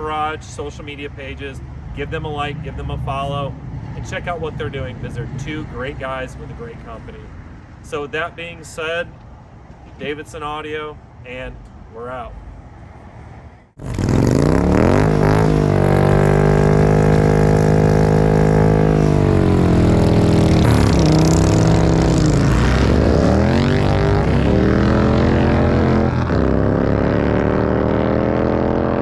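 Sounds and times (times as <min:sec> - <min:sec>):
motorcycle engine revving: 0:13.8 - 0:29.0.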